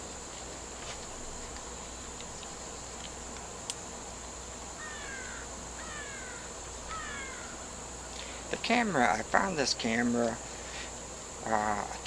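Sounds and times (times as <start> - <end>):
insects droning: 0.0 - 12.0
bird falling calls: 4.8 - 8.4.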